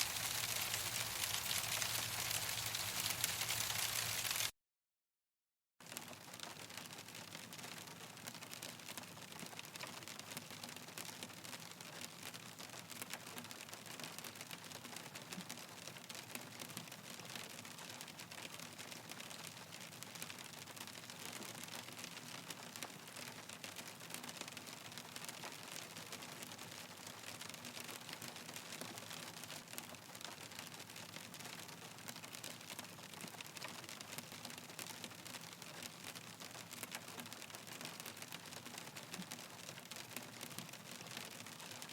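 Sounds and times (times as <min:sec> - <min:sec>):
hailstones pattering: 0:00.0 - 0:04.5.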